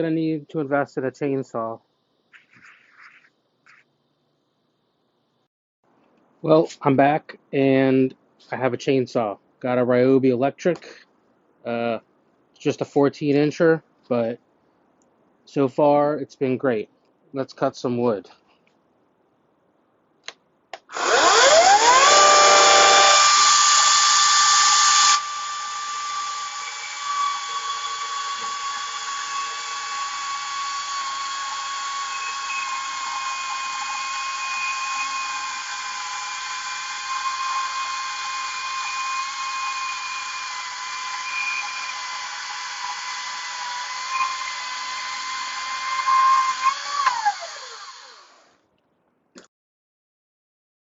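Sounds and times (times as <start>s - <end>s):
electric chainsaw whining: 20.9s - 48.5s.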